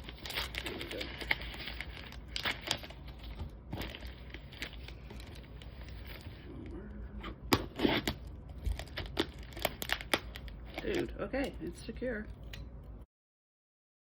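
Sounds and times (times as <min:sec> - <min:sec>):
packaging rustling: 0:00.0 - 0:06.4, 0:07.5 - 0:11.1.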